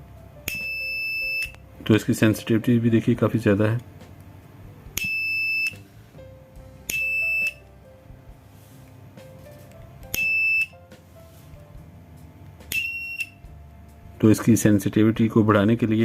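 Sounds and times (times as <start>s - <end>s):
electronic buzzer beeps: 0.5s - 1.6s, 5.0s - 5.8s, 6.9s - 7.6s, 10.1s - 10.8s, 12.7s - 13.4s.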